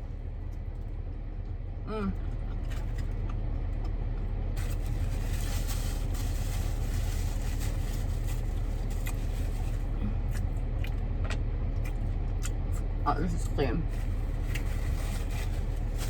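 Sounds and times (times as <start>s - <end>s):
rustling with crackles and clicks: 2.4s - 12.9s, 13.8s - 16.0s
car cabin rumble: 13.0s - 16.0s.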